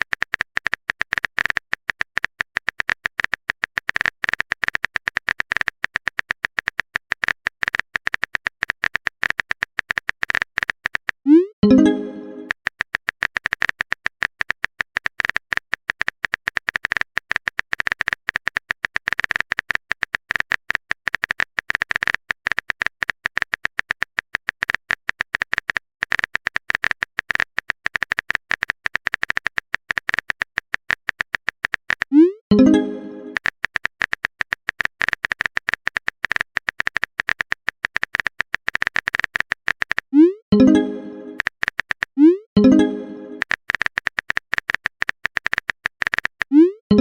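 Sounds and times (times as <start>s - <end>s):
phone typing clicks: 0.0s - 47.0s
rising message chime: 11.6s - 12.5s, 32.5s - 33.3s, 40.5s - 41.4s.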